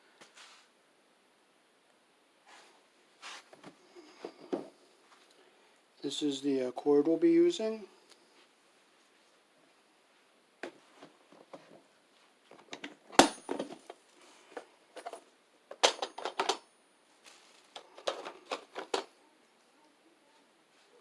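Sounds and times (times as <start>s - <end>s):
hard objects clicking and clinking: 12.7s - 16.6s.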